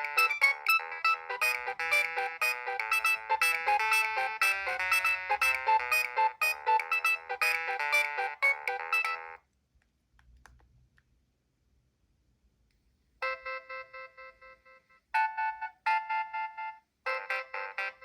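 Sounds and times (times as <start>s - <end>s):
polyphonic ringtone melody: 0.0s - 9.4s, 15.2s - 18.0s.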